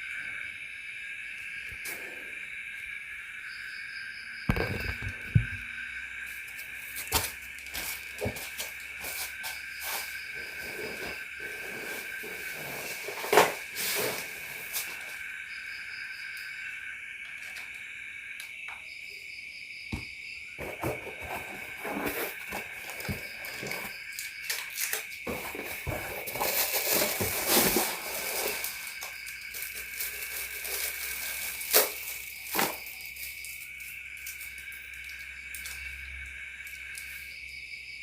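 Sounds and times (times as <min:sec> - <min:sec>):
crickets and insects chirping: 0:00.0 - 0:38.0
rustling: 0:07.0 - 0:15.2, 0:24.7 - 0:33.6.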